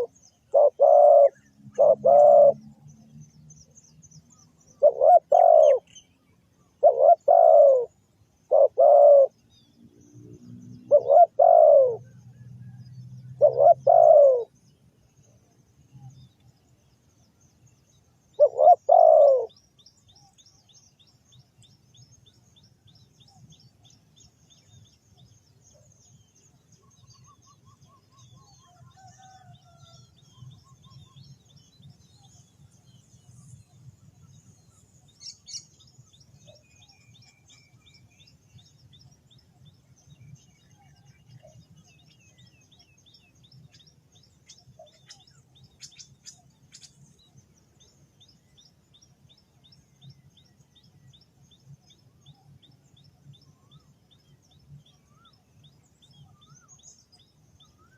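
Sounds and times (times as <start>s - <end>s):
dove cooing: 0.0s - 2.6s, 4.8s - 5.9s, 6.8s - 7.9s, 8.5s - 9.4s, 10.9s - 12.1s, 13.4s - 14.5s, 18.4s - 19.6s, 29.0s - 29.5s
small birds chirping: 0.0s - 57.9s.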